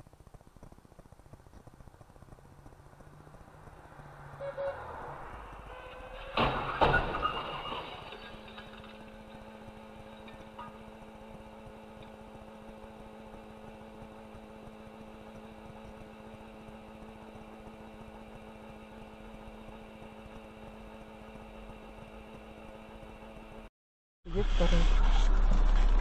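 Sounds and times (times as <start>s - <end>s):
electrical hum with hiss: 8.2s - 23.7s.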